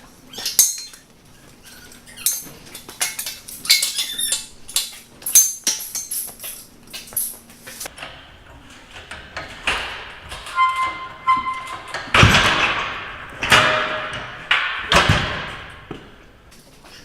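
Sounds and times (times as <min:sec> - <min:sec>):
heavy metal clanks: 0:07.9 - 0:16.4.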